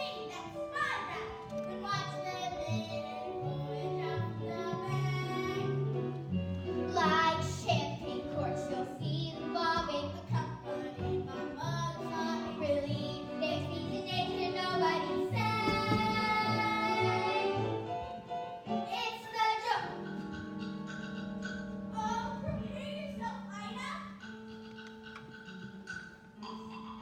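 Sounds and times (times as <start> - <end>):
instrumental accompaniment: 0.0 - 27.0
children singing: 6.9 - 17.9.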